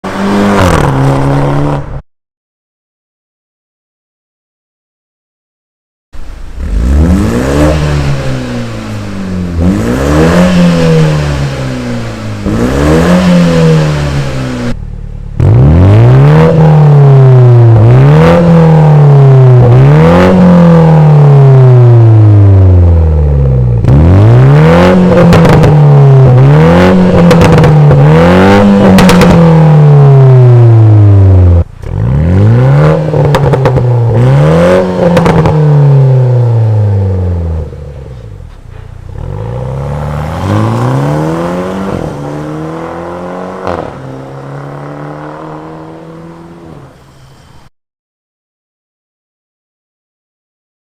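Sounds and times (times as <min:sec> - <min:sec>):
car engine revving: 0:00.0 - 0:02.0, 0:06.2 - 0:47.4
exhaust cracks: 0:35.0 - 0:46.3.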